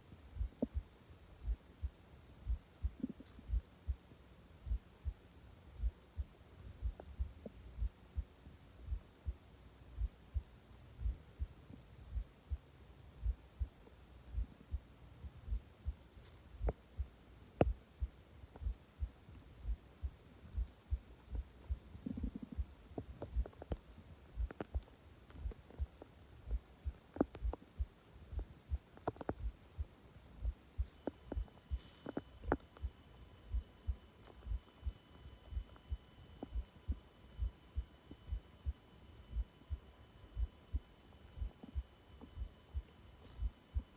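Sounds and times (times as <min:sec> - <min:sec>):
low hum: 0:00.0 - 0:43.9
heartbeat thumps: 0:00.3 - 0:04.0, 0:04.6 - 0:23.8, 0:24.4 - 0:43.9
stomach gurgle: 0:22.0 - 0:23.8, 0:28.4 - 0:29.5
stomach pops and gurgles: 0:24.4 - 0:27.6, 0:28.4 - 0:29.5, 0:30.9 - 0:32.9.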